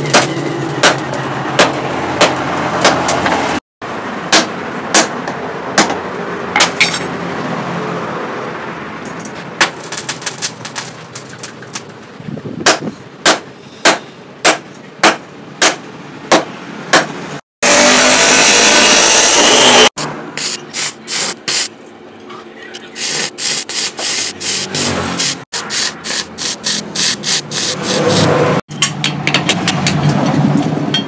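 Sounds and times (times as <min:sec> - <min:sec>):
hammer striking steel: 0:00.0 - 0:03.4, 0:04.3 - 0:06.0, 0:12.6 - 0:17.8.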